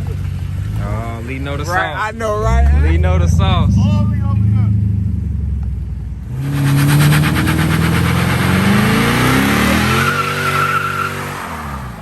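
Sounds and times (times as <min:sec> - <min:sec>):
car engine revving hard: 0:06.2 - 0:12.0
tires skidding on wet pavement: 0:06.3 - 0:12.0
tire squeal: 0:06.4 - 0:12.0.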